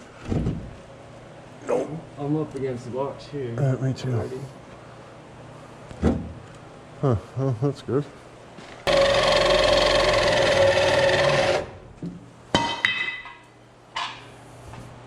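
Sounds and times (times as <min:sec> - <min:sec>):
power tool running: 0:08.9 - 0:11.8.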